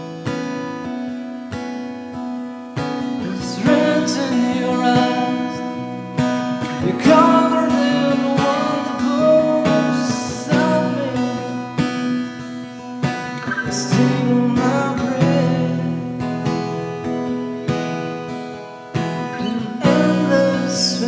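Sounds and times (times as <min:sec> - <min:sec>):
guitar strummed chords: 0:00.0 - 0:21.0
person singing: 0:03.1 - 0:12.1, 0:13.2 - 0:16.5, 0:19.2 - 0:21.0.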